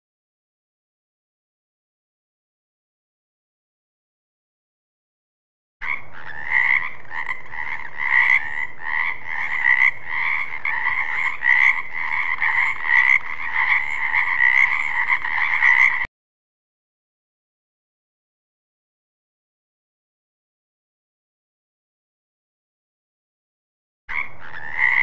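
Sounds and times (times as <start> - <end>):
frog croaking: 5.8 - 16.1, 24.1 - 25.0.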